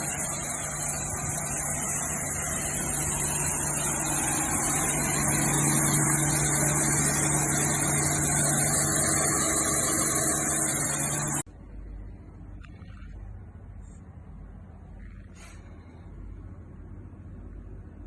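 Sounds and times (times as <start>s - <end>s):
motor humming with hiss: 0.0s - 11.4s.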